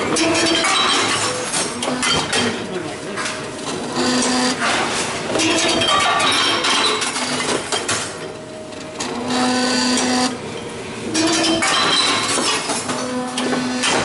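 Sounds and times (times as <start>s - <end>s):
mechanical clatter and rattling: 0.0s - 9.2s, 11.1s - 14.0s
vending machine motor humming: 1.2s - 13.9s.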